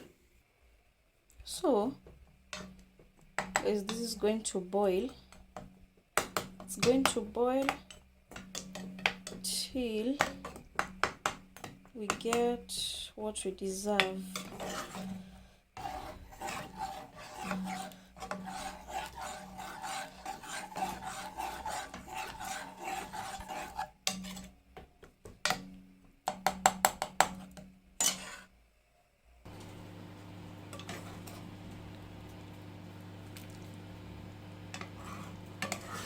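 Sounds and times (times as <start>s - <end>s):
utensil scraping cooking pot: 14.0s - 24.6s, 27.4s - 28.5s, 30.6s - 31.9s, 34.6s - 36.0s
steady low hum: 29.5s - 36.0s.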